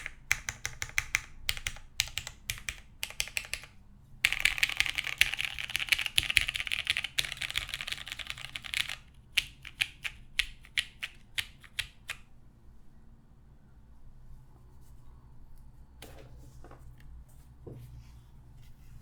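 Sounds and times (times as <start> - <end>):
typing on mechanical keyboard: 0.0 - 12.2.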